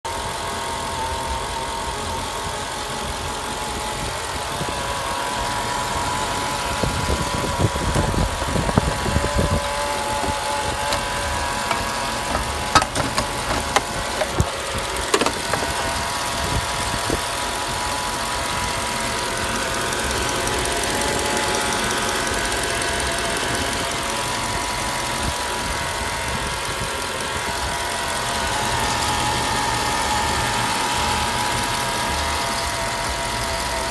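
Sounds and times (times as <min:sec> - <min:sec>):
car engine idling: 0:00.1 - 0:33.9
constant whine: 0:00.3 - 0:23.7
thumps and sharp clicks: 0:10.8 - 0:16.0.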